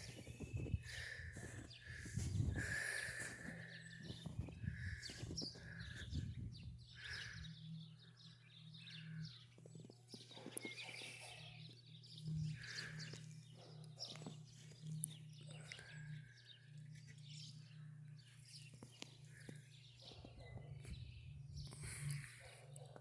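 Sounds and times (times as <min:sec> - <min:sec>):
footsteps crunching in snow: 0:00.0 - 0:06.2
bird calls: 0:00.0 - 0:23.0.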